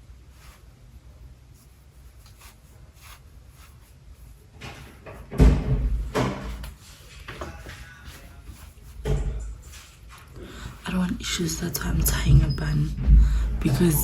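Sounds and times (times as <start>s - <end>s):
knocks and thuds: 4.6s - 6.7s, 9.0s - 9.5s, 12.2s - 13.7s.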